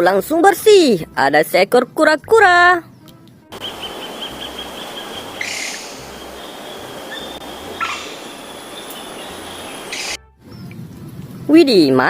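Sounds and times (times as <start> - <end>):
water running: 3.6 - 10.2
water splashing: 3.6 - 10.2.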